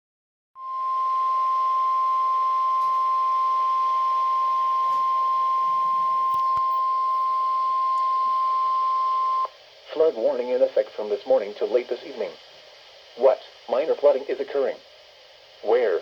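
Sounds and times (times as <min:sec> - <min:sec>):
steady warning alarm beep: 0:00.6 - 0:09.5
radio hiss: 0:02.8 - 0:16.0.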